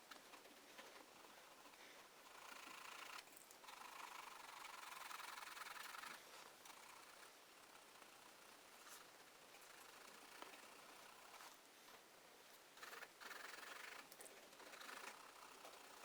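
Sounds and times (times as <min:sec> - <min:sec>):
pencil rubbing on paper: 0:01.0 - 0:09.0.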